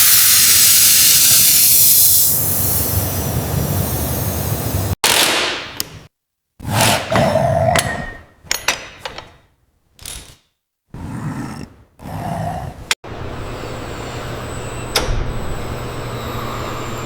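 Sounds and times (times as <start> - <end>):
mechanical clunks and clatters: 7.8 - 10.4.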